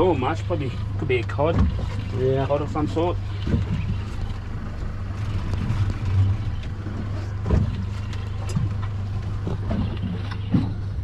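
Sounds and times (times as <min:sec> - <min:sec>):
boat engine idling: 0:00.0 - 0:11.0.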